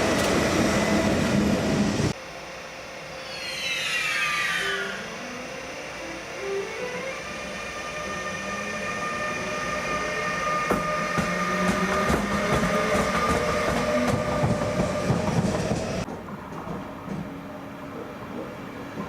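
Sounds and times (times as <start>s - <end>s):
high whining tones: 2.2s - 14.8s
train wheels clattering over rails: 10.6s - 17.5s.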